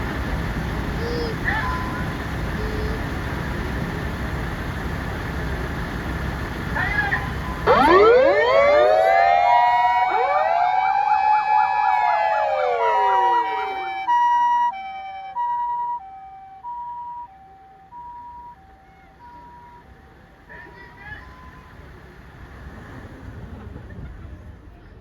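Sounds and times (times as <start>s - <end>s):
electronic yelp siren: 6.8s - 19.9s
mechanical siren wailing: 6.8s - 19.9s
two-tone siren: 6.8s - 20.0s.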